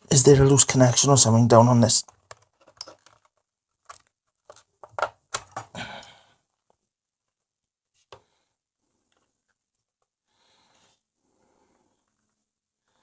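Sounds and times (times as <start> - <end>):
small clicks and rustles: 2.0 - 11.1.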